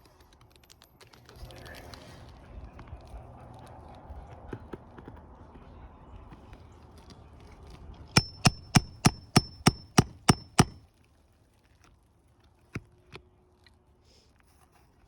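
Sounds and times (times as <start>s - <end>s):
hammer striking steel: 8.2s - 10.8s.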